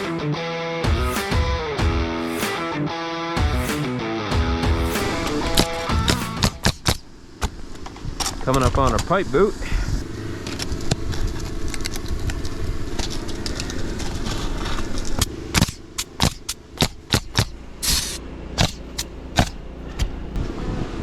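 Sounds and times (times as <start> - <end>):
nails knocked into shingles: 15.2 - 19.6
rasping burst: 15.2 - 19.6.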